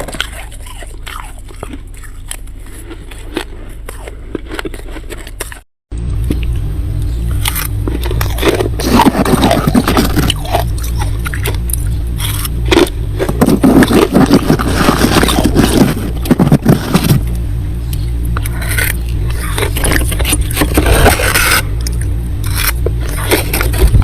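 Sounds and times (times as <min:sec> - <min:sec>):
freezer humming: 0:00.0 - 0:24.0
frost being scraped: 0:07.6 - 0:11.0, 0:11.6 - 0:17.4, 0:18.3 - 0:24.0.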